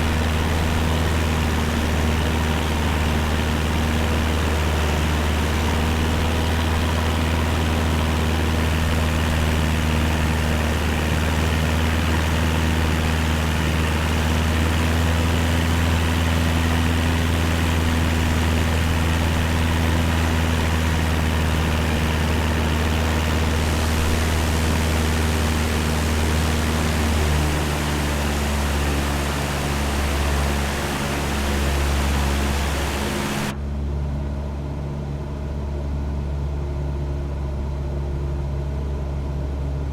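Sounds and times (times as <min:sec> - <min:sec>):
propeller plane engine droning: 0:00.0 - 0:39.9
broad hiss: 0:23.2 - 0:33.5.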